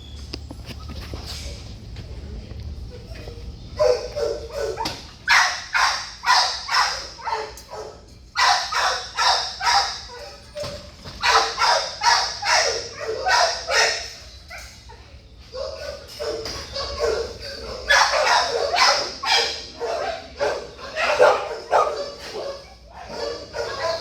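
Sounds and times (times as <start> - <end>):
dog barking: 3.8 - 10.3, 11.2 - 14.2, 15.6 - 24.0.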